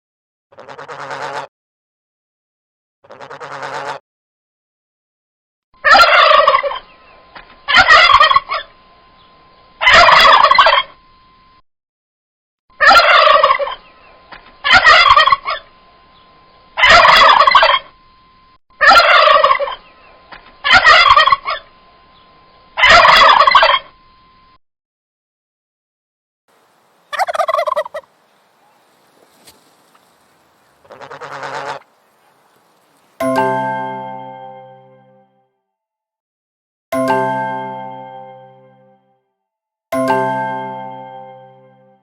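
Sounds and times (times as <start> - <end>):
turkey gobbling: 0.6 - 1.4, 3.1 - 4.0, 5.8 - 8.7, 9.8 - 11.0, 12.8 - 15.7, 16.8 - 17.9, 18.8 - 21.7, 22.8 - 23.9, 26.6 - 33.3
faint steady tone: 6.6 - 11.6, 14.9 - 24.6, 26.5 - 35.4.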